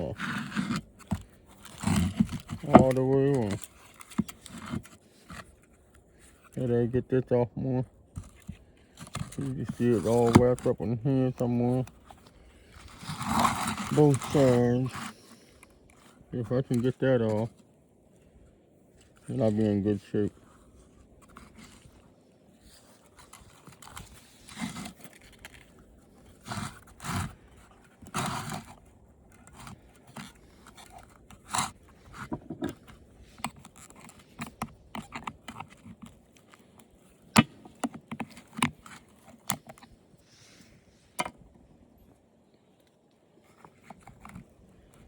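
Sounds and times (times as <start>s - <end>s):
plastic scraping and crunching: 0.0s - 6.7s, 8.1s - 17.5s, 19.2s - 40.6s, 43.4s - 45.0s.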